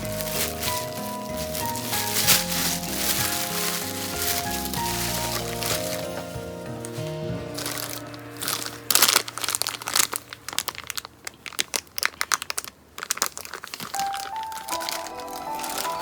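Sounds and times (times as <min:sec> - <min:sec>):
soft background music: 0:00.0 - 0:11.0, 0:13.9 - 0:16.0
packaging wrap crinkling: 0:00.0 - 0:16.0.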